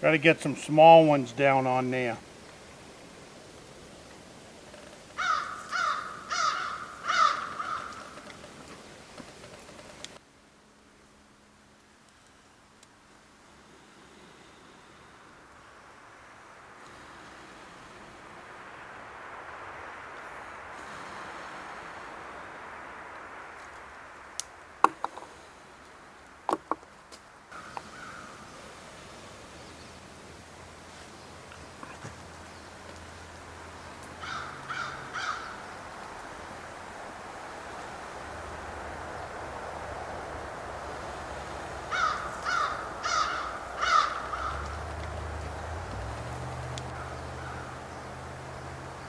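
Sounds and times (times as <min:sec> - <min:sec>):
low fire hiss: 0:00.0 - 0:49.0
bird harsh calls: 0:05.2 - 0:08.2, 0:27.6 - 0:28.6, 0:34.2 - 0:35.8, 0:41.9 - 0:44.7
fire crackling and popping: 0:07.4 - 0:10.2, 0:16.3 - 0:28.0, 0:44.5 - 0:47.1.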